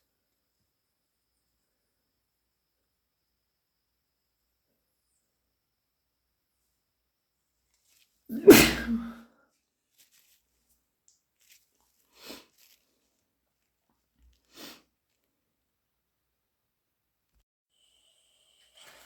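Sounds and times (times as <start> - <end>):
wet sneeze: 8.3 - 9.3.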